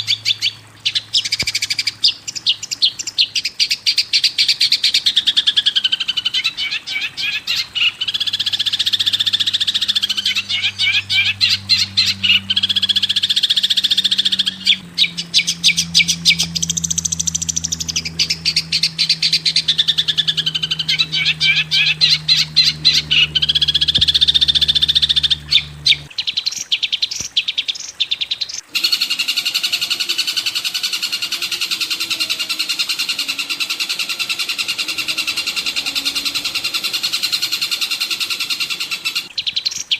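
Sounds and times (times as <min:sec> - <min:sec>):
songbird chattering trills: 0:00.0 - 0:26.1, 0:28.4 - 0:39.9
high repeated bird notes: 0:05.8 - 0:26.1, 0:28.7 - 0:39.3
steady low hum: 0:07.5 - 0:26.1, 0:28.7 - 0:39.3.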